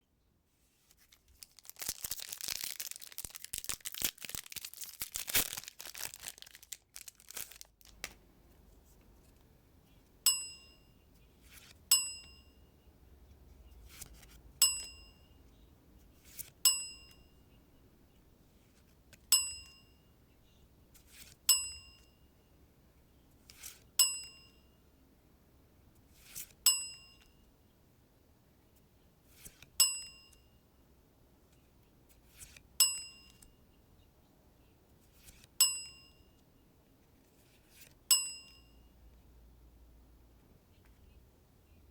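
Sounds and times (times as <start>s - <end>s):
foil wrapper tearing and crinkling: 0.9s - 8.2s
bell-like ding: 10.3s - 11.0s, 11.9s - 12.7s, 14.6s - 15.4s, 21.5s - 22.2s, 24.0s - 24.7s, 38.1s - 38.8s.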